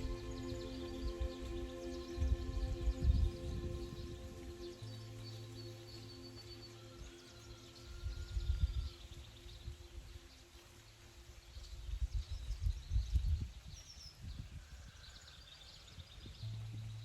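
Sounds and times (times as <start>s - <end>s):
low rumbling: 0.0s - 10.1s, 16.3s - 17.0s
small birds chirping: 0.0s - 17.0s.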